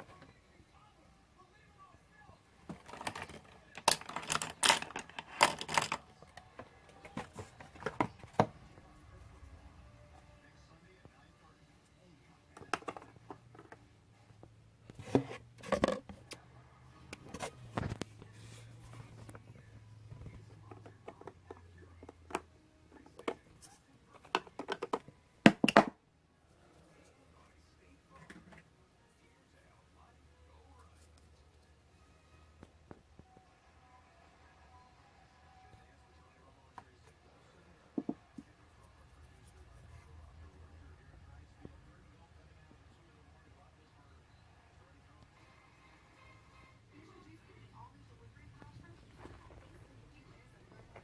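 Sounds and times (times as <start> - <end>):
plastic containers clicking: 24.2 - 25.9.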